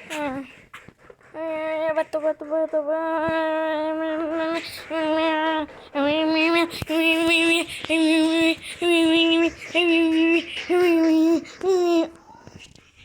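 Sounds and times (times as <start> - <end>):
young voice singing held notes: 1.2 - 12.8.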